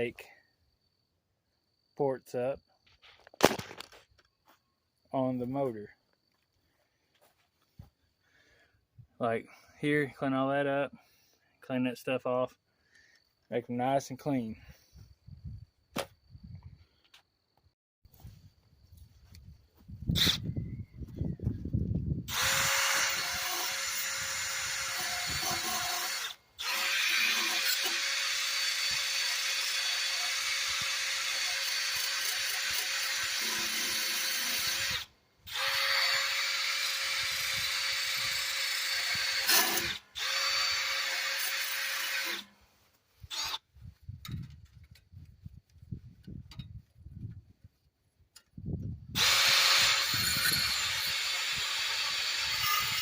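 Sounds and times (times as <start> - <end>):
drill whine: 22.3 - 42.5, 43.3 - 43.6, 49.2 - 53.0.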